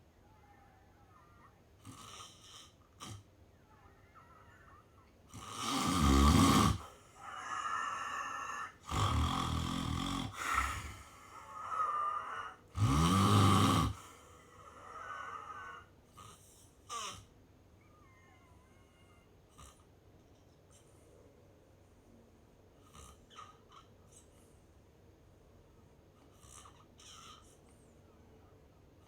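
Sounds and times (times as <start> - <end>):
person snoring: 5.4 - 17.2.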